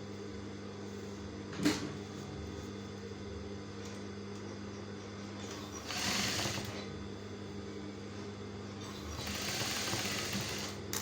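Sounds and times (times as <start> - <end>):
low electrical hum: 0.0 - 5.8.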